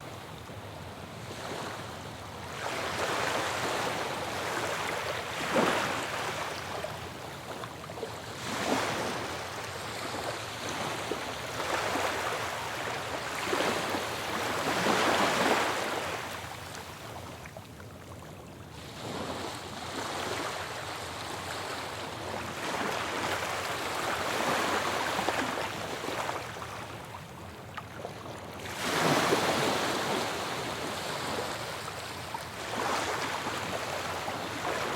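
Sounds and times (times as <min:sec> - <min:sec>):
ocean waves breaking: 0:28.6 - 0:34.9.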